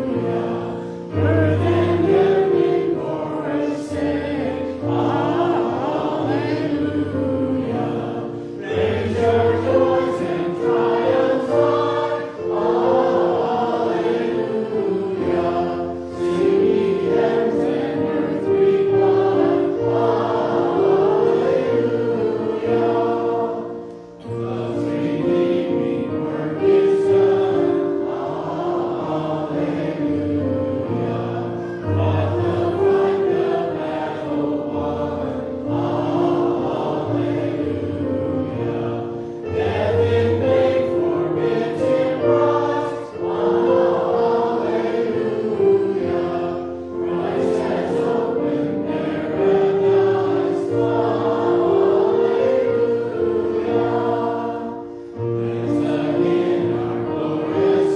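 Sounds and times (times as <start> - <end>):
choir singing held notes: 0.0 - 57.9.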